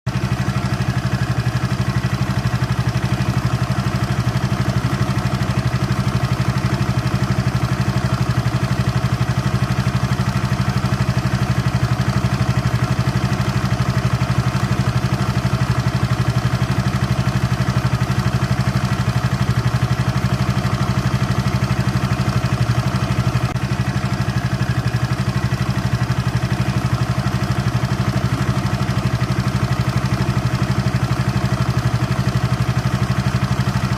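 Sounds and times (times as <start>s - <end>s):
engine idling: 0.1s - 33.9s.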